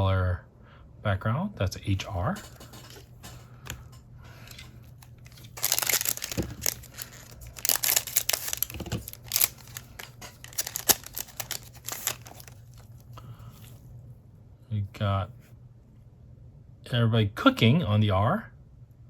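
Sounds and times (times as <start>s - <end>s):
foil wrapper tearing and crinkling: 4.4s - 13.1s.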